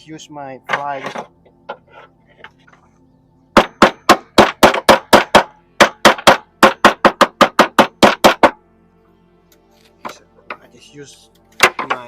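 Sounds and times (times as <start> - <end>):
hammering on metal panel: 3.5 - 8.6.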